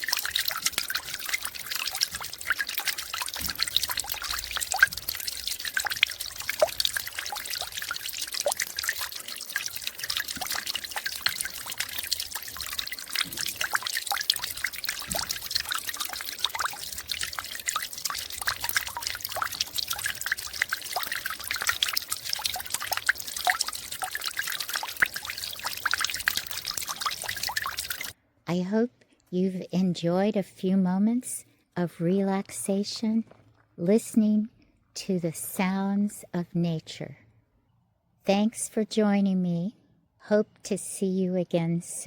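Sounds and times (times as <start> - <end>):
water dripping: 0.0 - 28.2
water trickling: 0.0 - 28.2.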